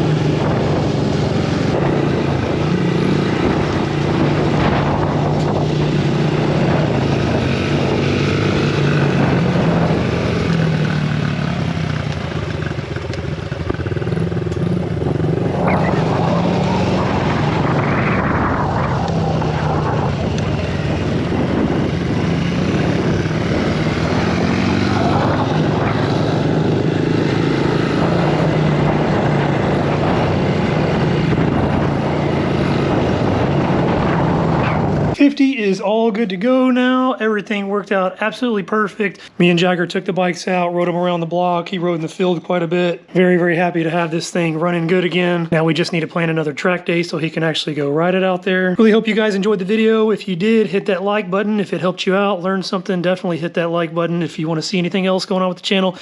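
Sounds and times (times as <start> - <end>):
dirt bike engine revving: 0.0 - 35.2.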